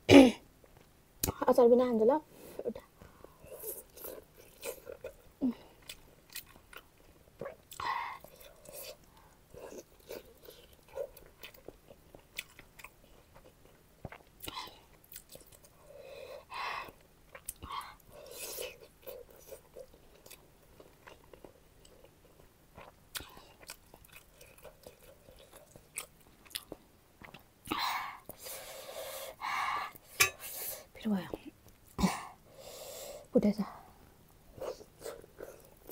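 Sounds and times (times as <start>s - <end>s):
wet chewing mouth sounds: 3.1s - 15.8s, 16.9s - 28.5s
breath noise: 15.8s - 17.0s, 27.7s - 31.0s, 32.0s - 35.7s.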